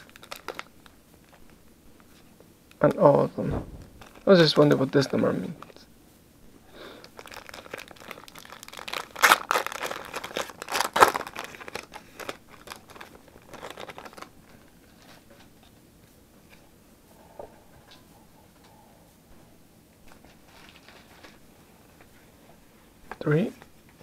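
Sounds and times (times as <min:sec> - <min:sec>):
foil wrapper crinkling and tearing: 0:00.0 - 0:01.4, 0:07.0 - 0:14.4.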